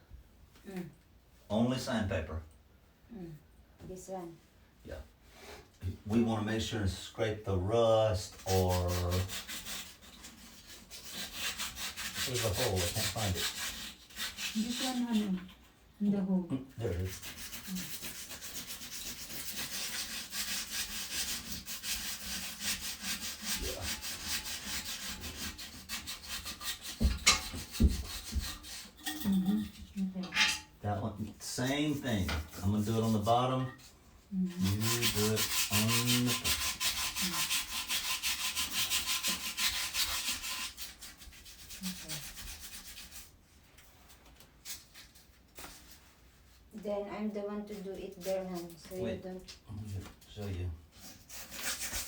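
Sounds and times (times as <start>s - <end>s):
sandpaper rubbing on metal: 8.3s - 15.4s, 16.8s - 29.2s, 31.7s - 33.7s, 34.5s - 43.4s, 51.0s - 52.0s.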